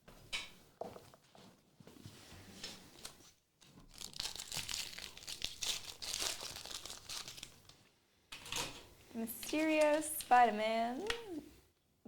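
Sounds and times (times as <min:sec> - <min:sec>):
wrapper tearing and crinkling: 0:03.8 - 0:07.8.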